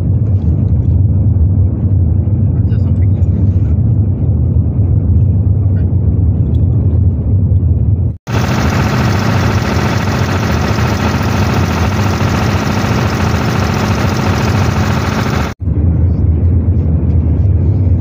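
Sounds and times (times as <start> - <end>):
power pack engine running: 8.3 - 15.6.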